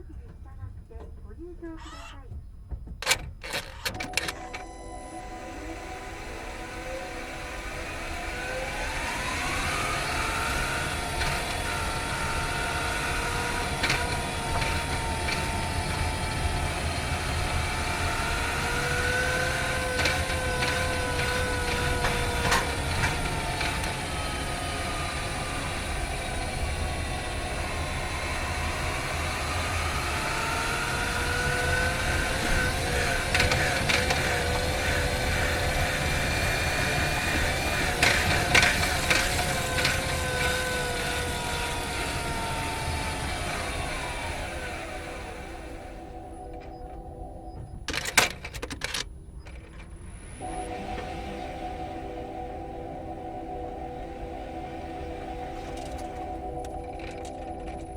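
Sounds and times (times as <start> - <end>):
drivetrain whine: 0.0 - 57.9
sharp clicks and ticks: 7.6 - 44.9.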